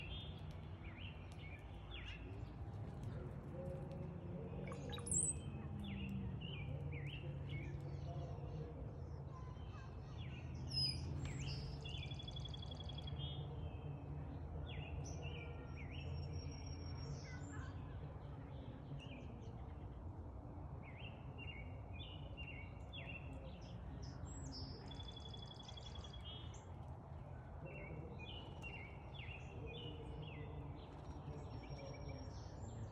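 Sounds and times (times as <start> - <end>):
songbirds chirping: 0.0 - 32.9
bird whistles and trills: 4.7 - 5.5.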